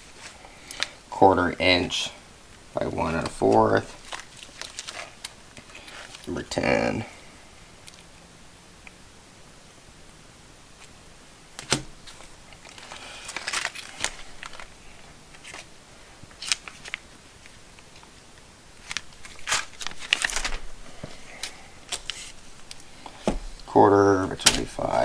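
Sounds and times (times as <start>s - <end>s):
clicks and taps of plastic packs: 0.6s - 0.9s, 11.6s - 14.7s
packaging crinkling: 3.2s - 6.3s, 11.6s - 15.7s, 16.3s - 17.6s, 18.8s - 25.0s.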